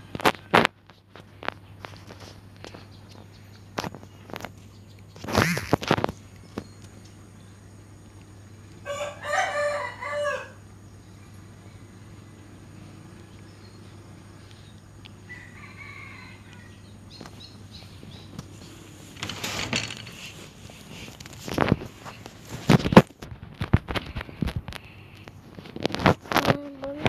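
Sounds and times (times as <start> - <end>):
steady low hum: 0.0 - 27.0
rooster crowing: 8.8 - 10.7, 15.2 - 17.1.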